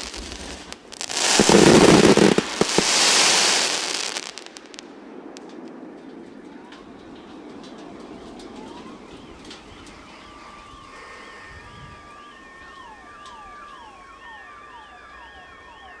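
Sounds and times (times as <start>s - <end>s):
fireworks pops and crackle: 0.0s - 10.0s
car alarm warbling: 1.0s - 3.9s, 8.2s - 16.0s
car alarm whooping: 1.0s - 4.0s, 8.1s - 16.0s.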